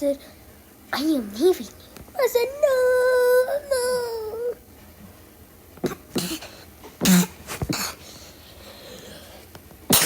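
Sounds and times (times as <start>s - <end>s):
person coughing: 5.8s - 8.0s.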